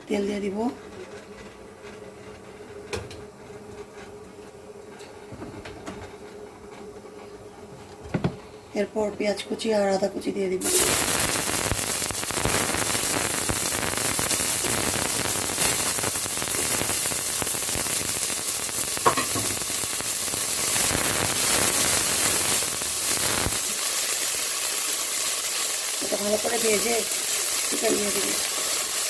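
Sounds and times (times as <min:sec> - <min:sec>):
onion and ginger sizzling in oil: 0:10.1 - 0:29.0.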